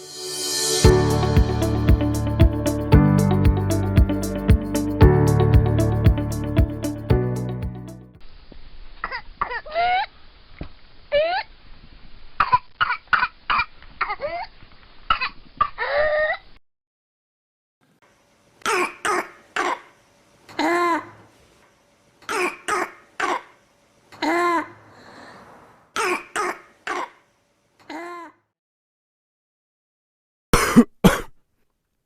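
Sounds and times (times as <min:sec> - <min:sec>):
short coughs: 0:18.6 - 0:19.9, 0:22.3 - 0:23.5, 0:26.0 - 0:27.2, 0:30.5 - 0:31.4
whooping cough: 0:18.7 - 0:19.9, 0:22.3 - 0:23.5, 0:26.0 - 0:27.2, 0:30.6 - 0:31.4.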